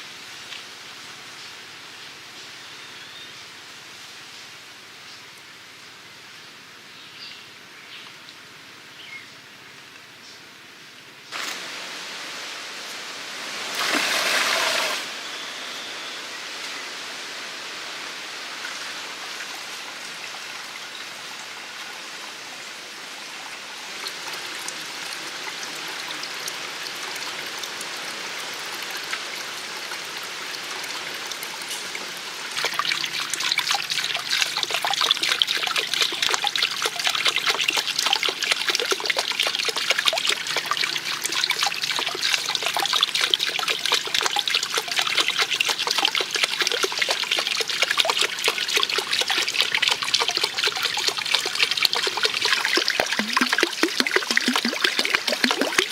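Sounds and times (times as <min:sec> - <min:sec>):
water trickling and splashing: 0:11.3 - 0:15.2, 0:18.5 - 0:55.9.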